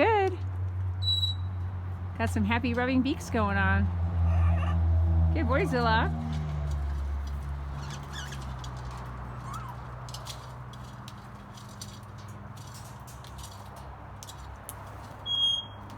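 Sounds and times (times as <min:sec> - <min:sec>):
parrot chirps and squeaks: 0:01.0 - 0:01.6, 0:07.8 - 0:08.5, 0:15.2 - 0:15.8.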